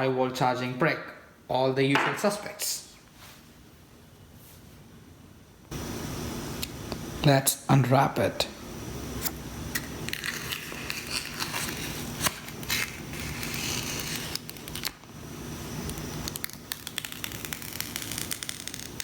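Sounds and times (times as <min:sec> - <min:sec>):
plastic wrap peeling and crinkling: 0:09.8 - 0:15.1, 0:15.8 - 0:19.0.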